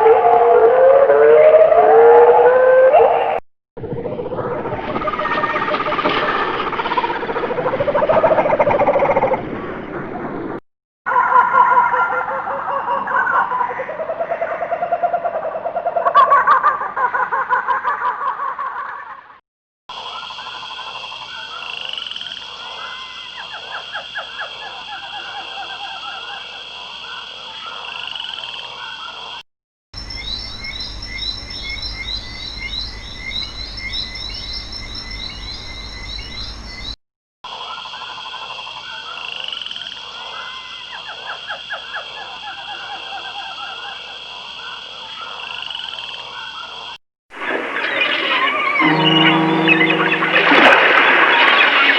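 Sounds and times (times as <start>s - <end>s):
frogs croaking: 20.0s - 29.4s, 30.0s - 47.0s.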